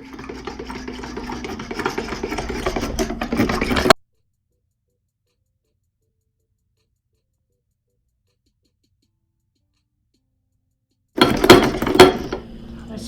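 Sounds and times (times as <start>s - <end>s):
whisk beating in a bowl: 0.0s - 4.0s, 11.2s - 12.4s.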